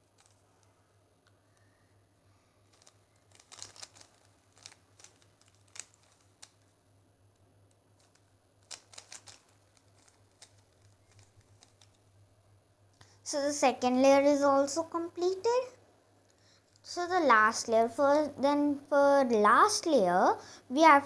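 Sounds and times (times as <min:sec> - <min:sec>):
puzzle cube layers clicking: 0:02.8 - 0:06.6, 0:08.0 - 0:12.0.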